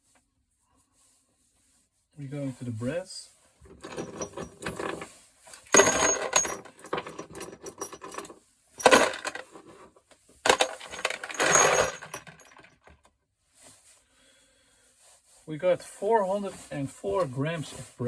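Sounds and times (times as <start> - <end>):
scrap brass clinking and clattering: 3.7 - 13.0.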